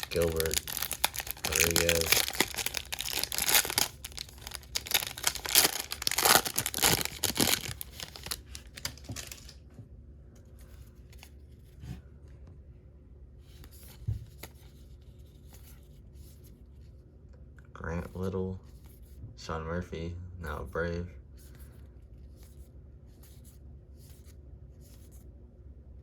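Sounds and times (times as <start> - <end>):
plastic wrapper tearing and crinkling: 0.0 - 9.6.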